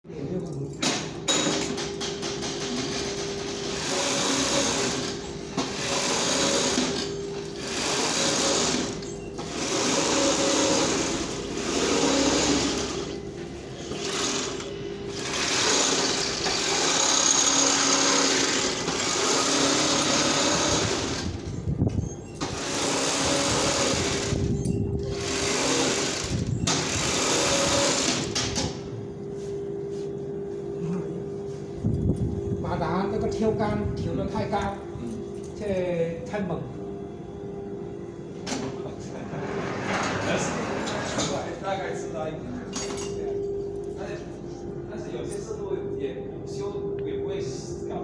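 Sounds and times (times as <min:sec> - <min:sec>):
sewing machine stitching: 0:02.4 - 0:13.2, 0:14.0 - 0:21.3.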